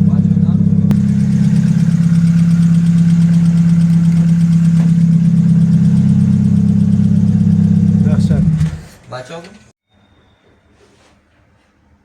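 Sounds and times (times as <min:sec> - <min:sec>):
car engine idling loudly: 0:00.8 - 0:09.0.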